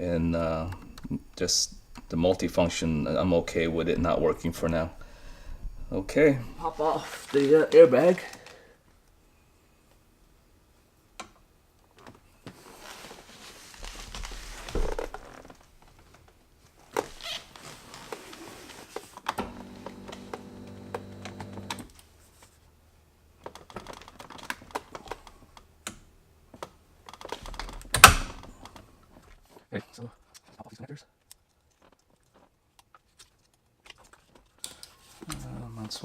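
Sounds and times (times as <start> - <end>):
steady hum: 0.0 - 8.1
clicks taps and rustling of hands: 30.2 - 36.0.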